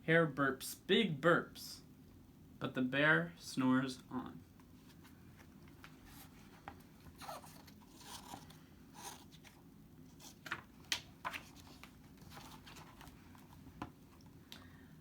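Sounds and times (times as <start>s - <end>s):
low room hum: 0.0s - 15.0s
paper page rustling: 4.8s - 13.9s
paper crackles: 7.0s - 13.6s.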